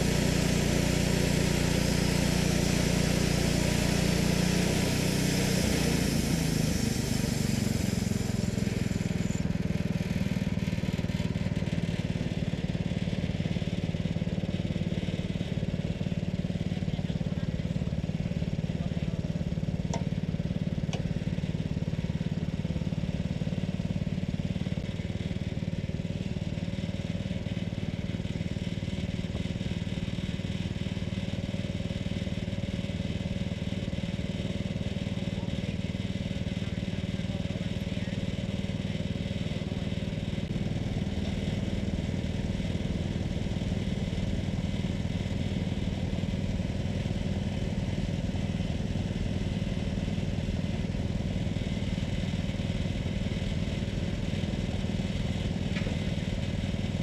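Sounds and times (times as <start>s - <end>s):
small gasoline engine running: 0.0s - 57.0s.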